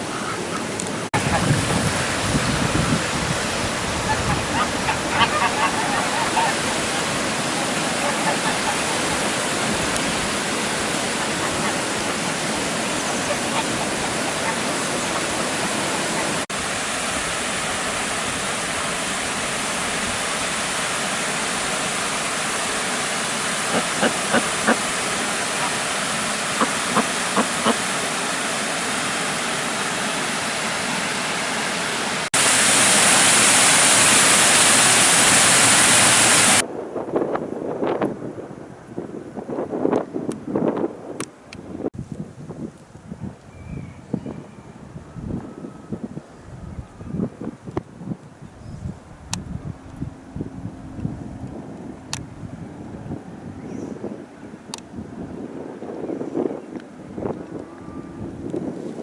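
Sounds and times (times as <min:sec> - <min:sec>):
waterfall roaring: 0:00.0 - 0:36.6.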